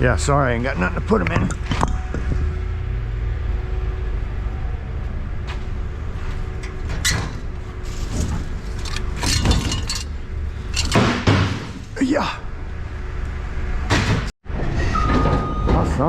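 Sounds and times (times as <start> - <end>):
engine rumbling: 0.0 - 14.3
short knocks and clanks: 6.6 - 12.0.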